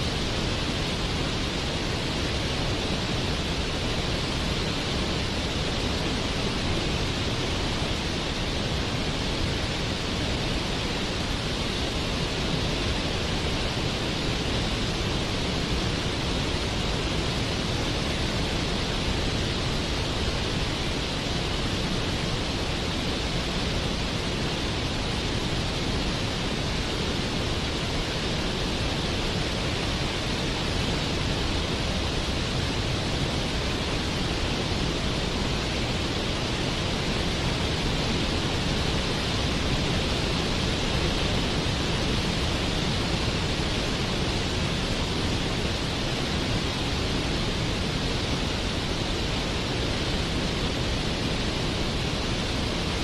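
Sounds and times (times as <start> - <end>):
waterfall rushing: 0.0 - 53.0.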